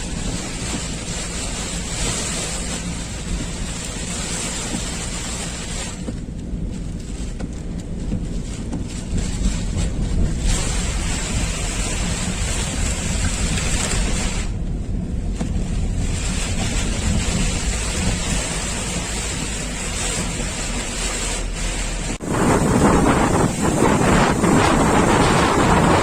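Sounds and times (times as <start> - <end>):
wind buffeting microphone: 0.0 - 21.0, 22.0 - 26.0
surf breaking on a beach: 22.2 - 26.0.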